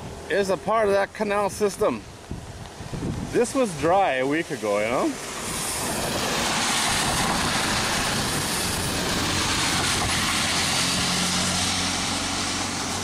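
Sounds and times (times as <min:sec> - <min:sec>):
floodwater rushing through canal: 0:00.0 - 0:13.0
low engine hum: 0:05.1 - 0:13.0.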